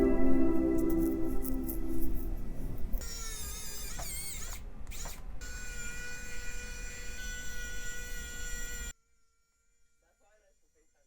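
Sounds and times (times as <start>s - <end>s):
low hum: 0.0s - 3.0s.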